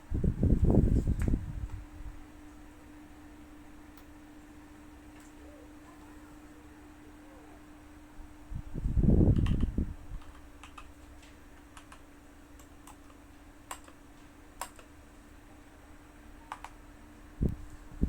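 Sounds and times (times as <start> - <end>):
mechanical keyboard typing: 9.3 - 14.0, 14.6 - 15.0, 16.5 - 16.8.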